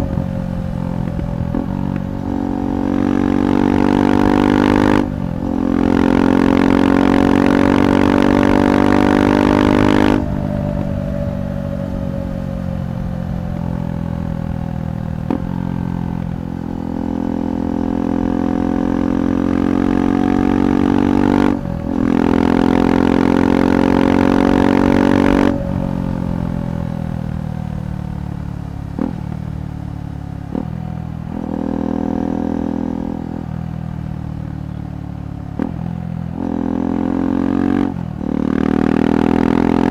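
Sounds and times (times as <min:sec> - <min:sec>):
exhaust cracks: 0:00.0 - 0:31.6
motorcycle engine revving: 0:00.0 - 0:39.9.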